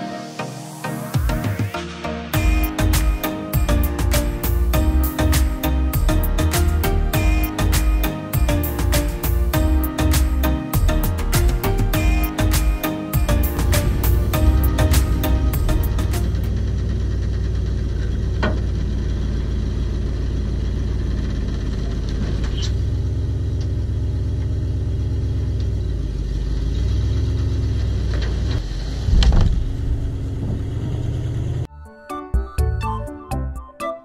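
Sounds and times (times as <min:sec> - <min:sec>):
excavator diesel engine running: 0:02.4 - 0:29.0.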